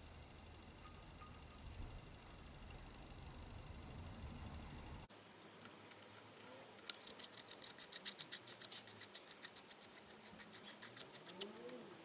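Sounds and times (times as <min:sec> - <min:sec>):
rapid metallic ticking: 0:05.4 - 0:12.0.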